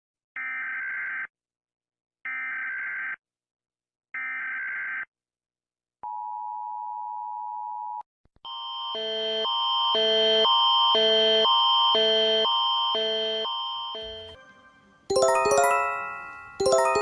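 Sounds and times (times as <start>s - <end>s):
two-tone attention signal: 13.0s - 17.0s.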